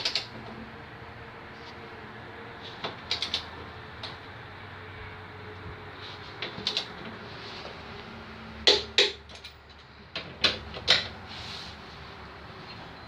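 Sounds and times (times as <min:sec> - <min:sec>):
knocks and clacks of tools handled: 0:06.3 - 0:07.8, 0:08.6 - 0:11.2.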